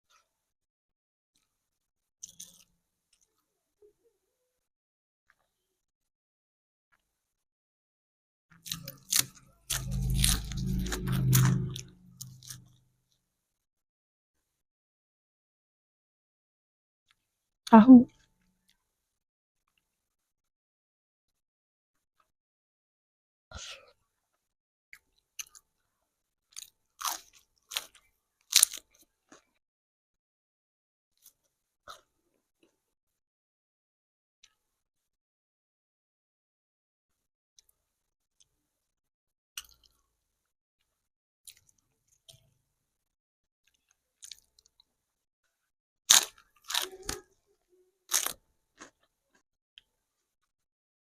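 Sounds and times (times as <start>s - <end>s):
person chewing crunchy food: 8.5s - 12.8s, 26.5s - 29.5s, 39.6s - 40.0s, 43.7s - 44.8s, 46.1s - 47.3s, 48.1s - 49.4s.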